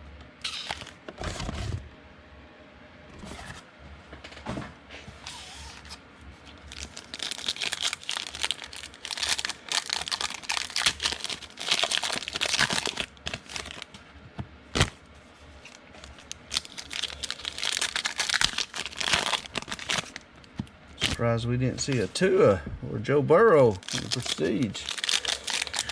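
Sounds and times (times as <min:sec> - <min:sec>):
wrappers crinkling and tearing: 0:00.5 - 0:01.0, 0:05.3 - 0:13.9, 0:15.6 - 0:20.2, 0:21.0 - 0:21.2, 0:23.7 - 0:25.9.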